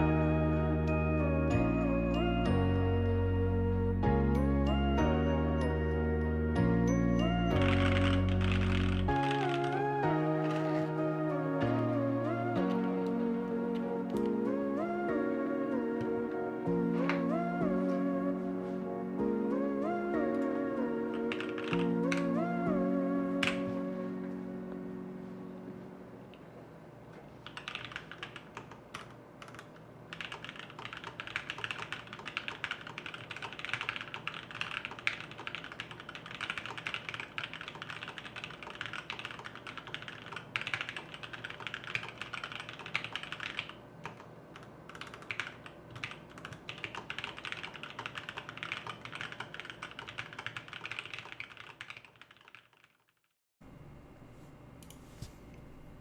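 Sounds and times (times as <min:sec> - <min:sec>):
mechanical keyboard typing: 0:07.3 - 0:11.0, 0:20.2 - 0:22.4, 0:27.4 - 0:53.2.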